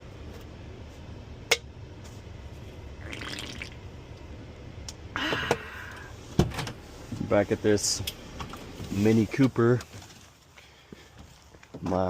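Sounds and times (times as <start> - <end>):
person slurping a drink: 3.0 - 3.8.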